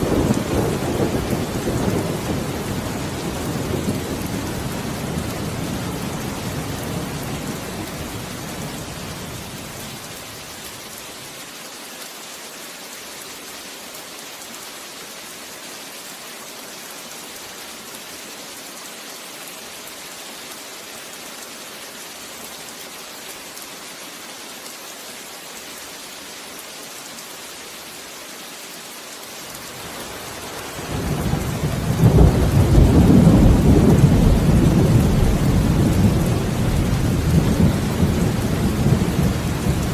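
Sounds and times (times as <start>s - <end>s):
thunder rumbling: 0.0s - 8.2s, 30.8s - 39.9s
heavy rain: 0.0s - 39.9s.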